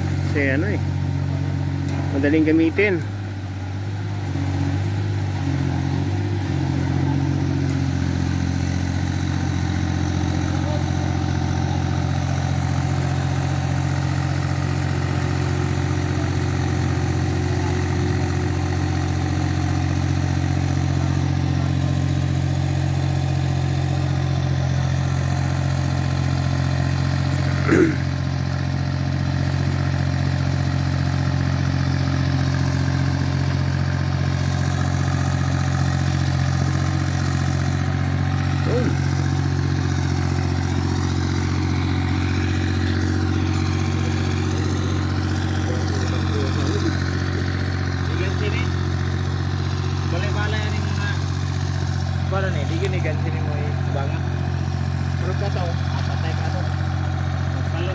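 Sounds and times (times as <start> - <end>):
backhoe engine running: 0.0 - 57.9.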